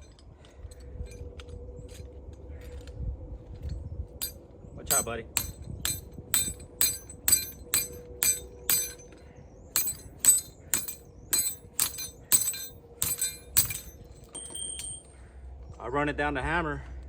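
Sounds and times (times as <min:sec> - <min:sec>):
hammer striking metal ring: 0:04.2 - 0:09.2, 0:09.8 - 0:15.2.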